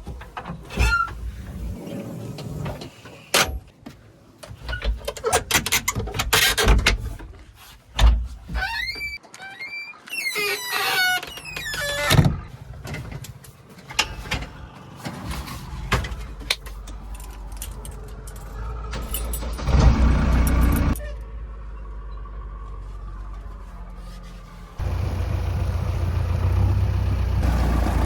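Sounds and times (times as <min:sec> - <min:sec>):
diesel engine running: 0:18.0 - 0:28.0.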